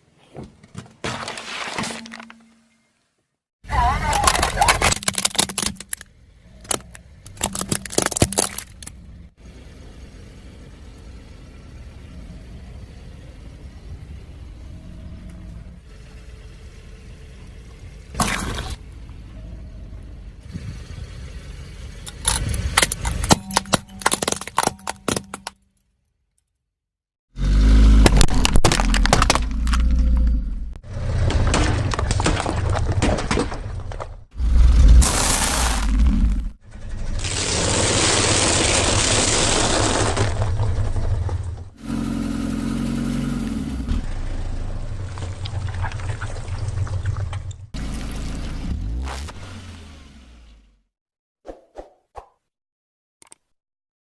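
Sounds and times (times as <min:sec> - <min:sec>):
tyre crushing brittle objects: 0:00.8 - 0:02.6, 0:04.0 - 0:09.0, 0:22.1 - 0:25.6, 0:28.0 - 0:30.3, 0:31.0 - 0:34.2, 0:34.9 - 0:36.5, 0:37.2 - 0:41.6
car engine running low: 0:05.3 - 0:25.2, 0:34.4 - 0:50.8.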